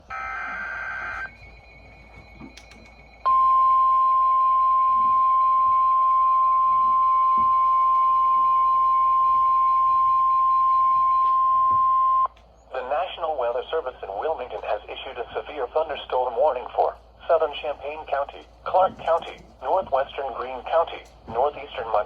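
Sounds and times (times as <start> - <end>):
screeching digital header tones: 0.0 - 3.8
steady alarm tone: 0.0 - 12.3.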